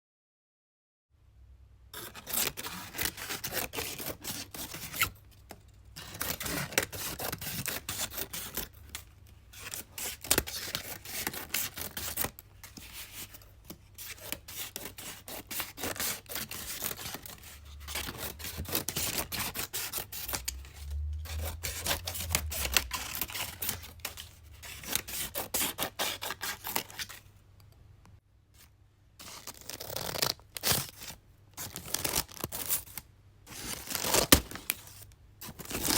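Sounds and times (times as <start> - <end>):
scissors cutting paper: 2.0 - 5.2, 6.0 - 27.2, 29.2 - 35.9
faint low hum: 20.0 - 24.8.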